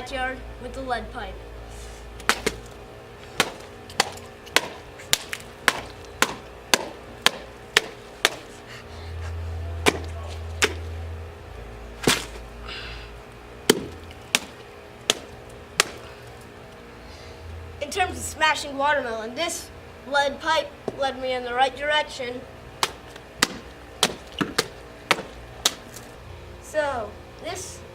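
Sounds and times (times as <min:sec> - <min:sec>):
metal pipe striking watermelon: 0:09.8 - 0:10.8.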